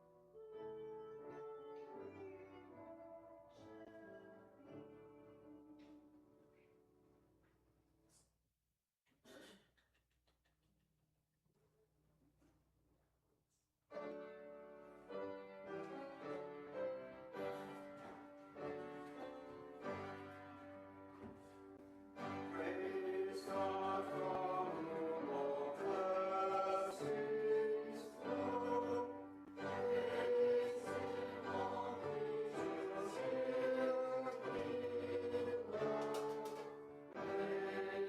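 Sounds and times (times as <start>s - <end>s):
piano playing church music: 0.0s - 6.1s, 13.9s - 38.0s
choir singing: 22.2s - 38.0s.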